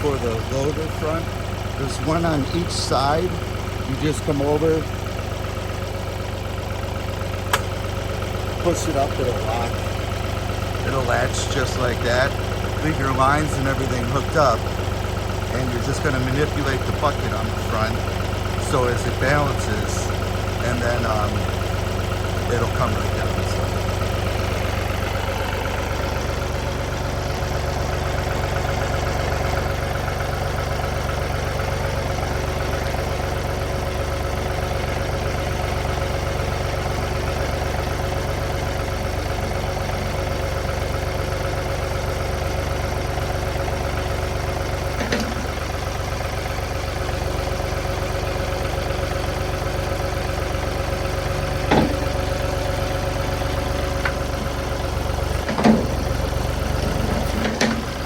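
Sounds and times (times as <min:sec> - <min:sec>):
tractor diesel engine idling: 0:00.0 - 0:58.0
short metal knocks: 0:45.0 - 0:45.6, 0:51.5 - 0:52.2, 0:55.4 - 0:58.0.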